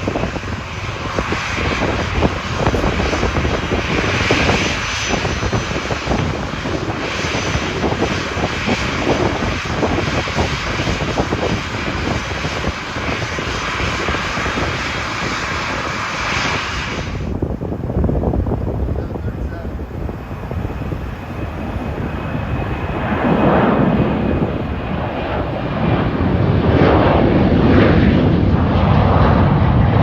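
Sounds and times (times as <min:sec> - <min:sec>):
jet engines running: 0:00.0 - 0:30.0.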